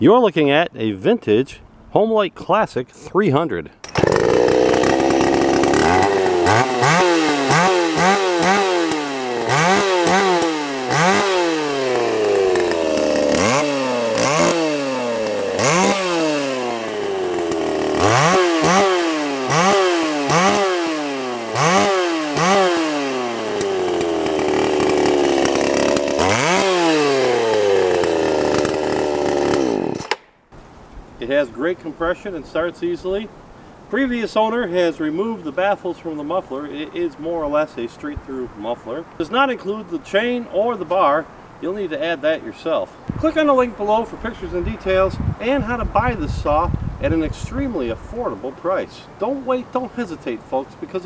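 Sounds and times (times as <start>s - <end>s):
chainsaw engine revving: 3.8s - 30.3s.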